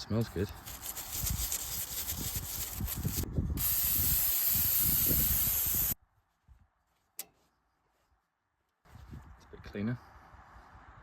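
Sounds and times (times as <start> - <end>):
aerosol spray hissing: 0.6 - 6.0.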